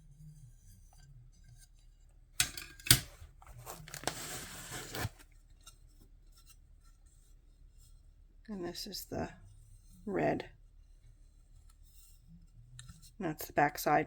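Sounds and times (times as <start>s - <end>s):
packaging being torn: 3.5s - 5.2s.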